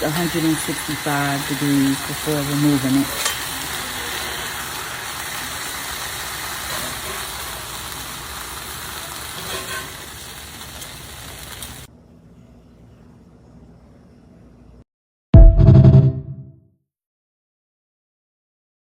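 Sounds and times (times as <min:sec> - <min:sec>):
chicken sizzling in a frying pan: 0:00.0 - 0:11.9
faint hiss: 0:00.0 - 0:11.9.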